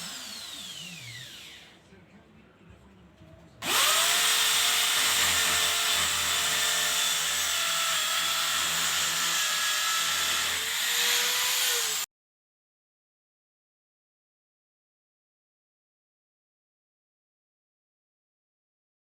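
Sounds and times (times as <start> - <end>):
electric drill running: 0.0 - 1.8, 3.6 - 12.1.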